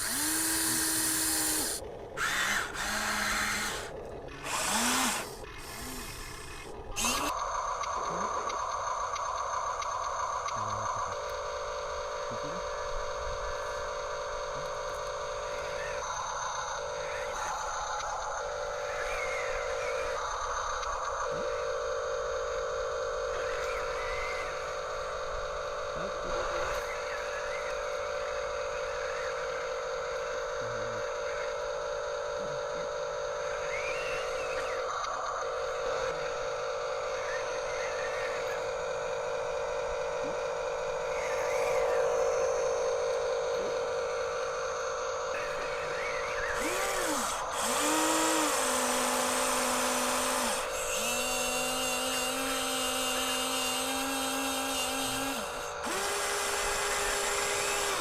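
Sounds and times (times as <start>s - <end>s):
gearbox chirps: 0.0s - 11.3s, 12.3s - 21.2s, 33.4s - 38.8s, 40.1s - 58.0s
electric motors whining: 0.0s - 58.0s.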